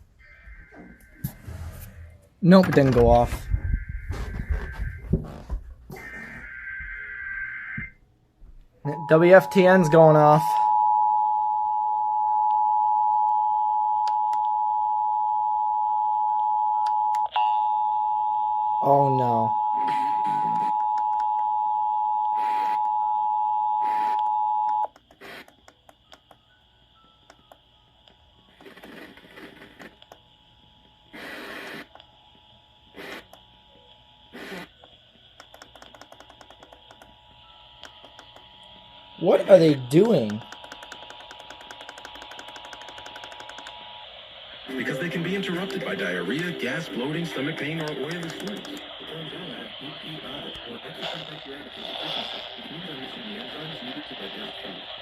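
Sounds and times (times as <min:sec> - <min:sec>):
radio static hiss: 0:00.3 - 0:08.0, 0:08.9 - 0:10.6, 0:18.9 - 0:21.1, 0:22.2 - 0:23.0, 0:23.8 - 0:26.0, 0:27.4 - 0:55.0
loud static bursts: 0:00.6 - 0:07.9, 0:25.1 - 0:25.8, 0:28.4 - 0:55.0
two-tone alert signal on radio: 0:02.4 - 0:08.0
rapid crackling clicks: 0:34.4 - 0:37.2, 0:40.0 - 0:43.8, 0:45.1 - 0:49.2.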